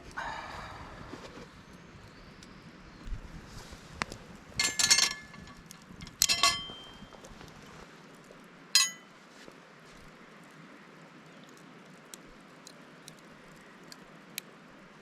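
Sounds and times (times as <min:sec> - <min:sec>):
metal cookware clinking: 0:04.6 - 0:07.0, 0:08.8 - 0:09.1.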